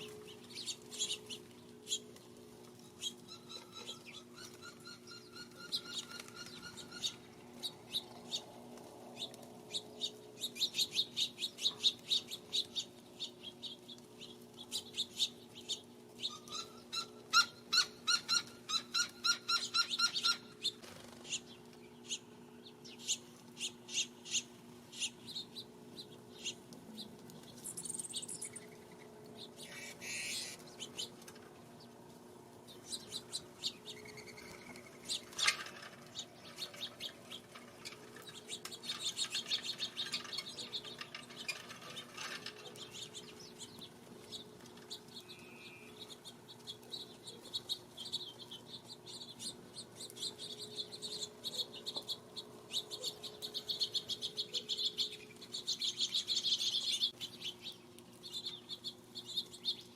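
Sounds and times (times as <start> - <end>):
faint steady hum: 0.0 - 59.9
small birds chirping: 0.0 - 59.9.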